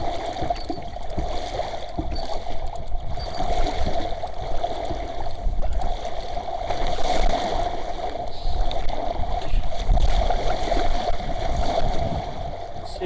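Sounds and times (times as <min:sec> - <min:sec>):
wind buffeting microphone: 0:09.0 - 0:12.9.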